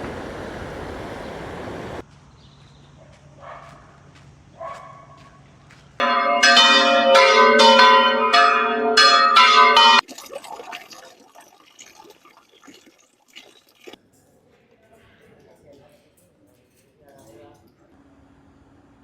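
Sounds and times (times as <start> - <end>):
church bells ringing: 6.0 - 10.0.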